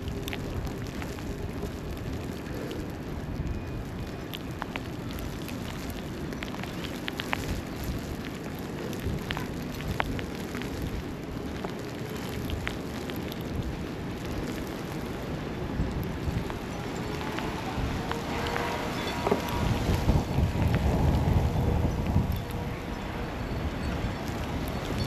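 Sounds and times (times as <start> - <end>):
low city rumble: 0.0 - 25.0
small irregular ticks: 0.0 - 25.0.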